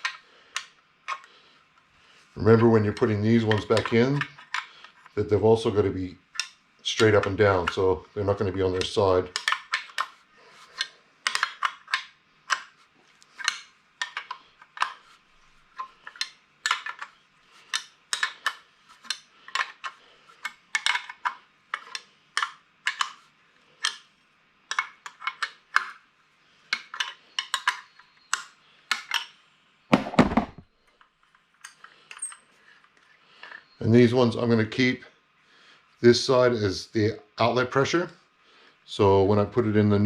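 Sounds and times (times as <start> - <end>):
heavy knock: 29.9 - 30.6
metal tools clinking: 31.6 - 32.6.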